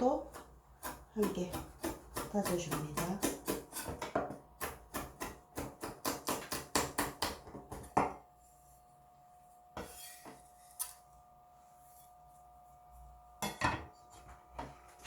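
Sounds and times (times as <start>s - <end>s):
knife chopping on cutting board: 0.3s - 8.2s.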